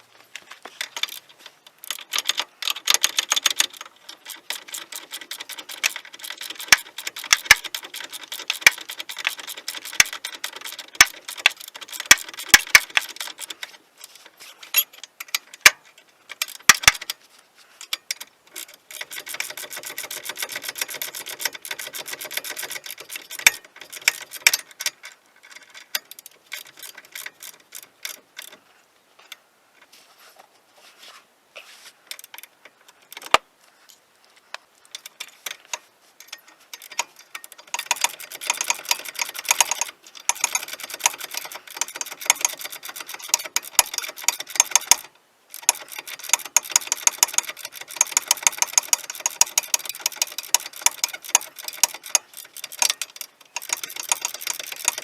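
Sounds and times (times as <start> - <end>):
socket ratchet clicking: 1.9 - 13.7, 18.2 - 25.0, 36.8 - 55.0.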